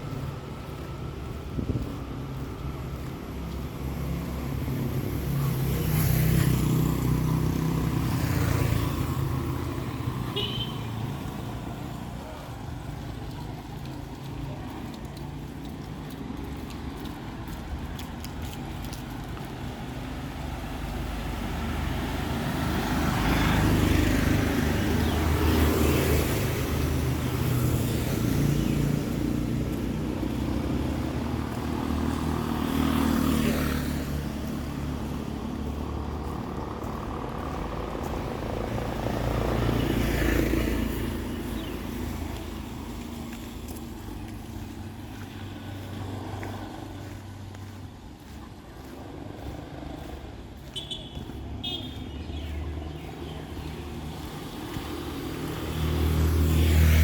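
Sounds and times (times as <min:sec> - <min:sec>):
vehicles passing close by: 0:00.0 - 0:57.0
low engine hum: 0:12.2 - 0:57.0.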